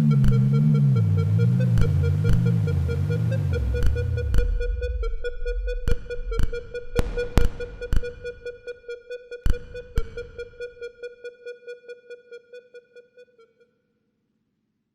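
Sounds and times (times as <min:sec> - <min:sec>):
low bass: 0:00.0 - 0:08.5
sharp electronic clicks: 0:07.0 - 0:08.2.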